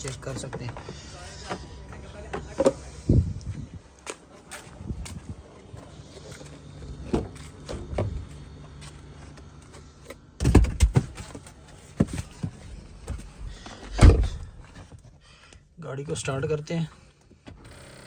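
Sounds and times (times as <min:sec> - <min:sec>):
knocks and clunks on car: 0:10.4 - 0:11.3
heavy low thuds: 0:12.0 - 0:14.9.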